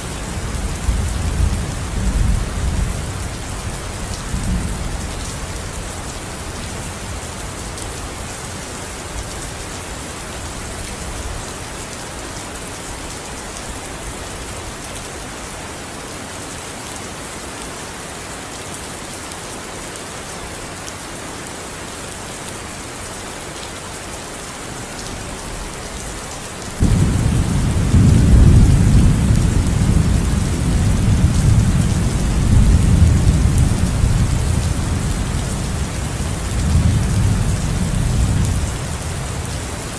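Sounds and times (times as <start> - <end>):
steady rain falling: 0.0 - 39.9
thunder rumbling: 26.8 - 39.6.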